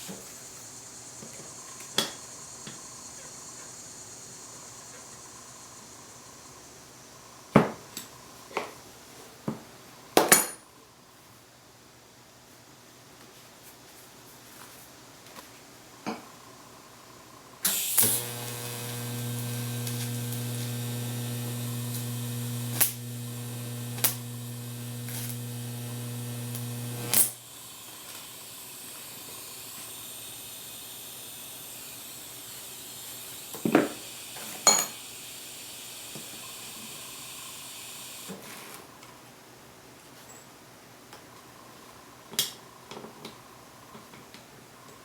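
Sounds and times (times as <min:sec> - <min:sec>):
soft steady hiss: 0:00.0 - 0:45.0
welding arc buzzing: 0:17.6 - 0:38.3.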